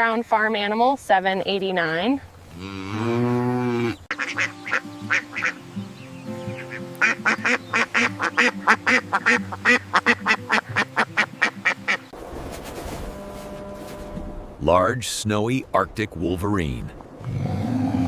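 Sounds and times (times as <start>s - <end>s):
duck quacking: 4.1s - 5.6s, 6.5s - 12.1s
background music: 4.1s - 12.2s.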